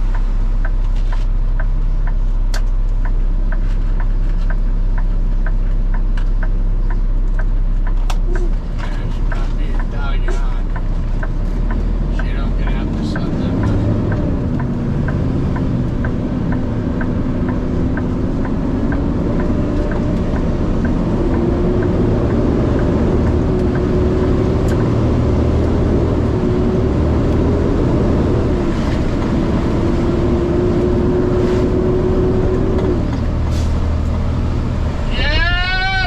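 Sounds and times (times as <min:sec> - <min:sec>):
truck engine drone: 0:00.0 - 0:36.0
quick regular ticking: 0:03.0 - 0:27.6.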